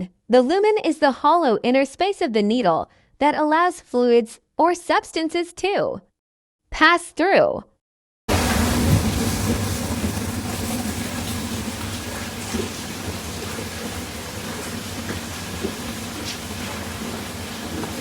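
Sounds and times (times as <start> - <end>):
low mechanical hum: 8.3 - 18.0.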